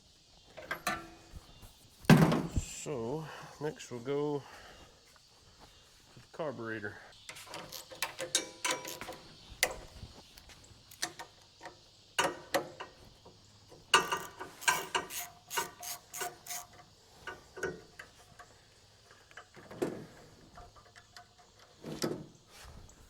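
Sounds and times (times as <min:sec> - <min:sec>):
hand tools clinking on metal: 0:07.3 - 0:09.3, 0:13.9 - 0:19.5.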